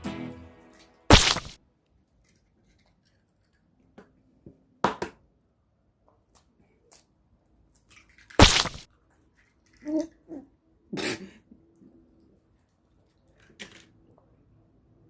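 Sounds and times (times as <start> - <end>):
sharp noise: 1.1 - 1.6, 8.4 - 8.9.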